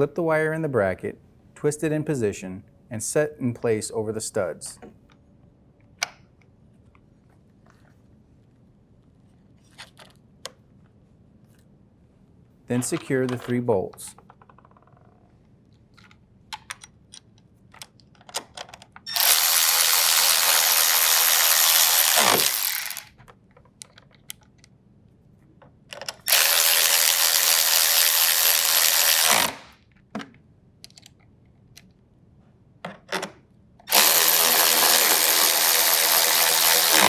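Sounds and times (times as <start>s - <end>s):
drill driver running: 19.1s - 23.1s, 26.3s - 29.8s, 33.9s - 37.0s.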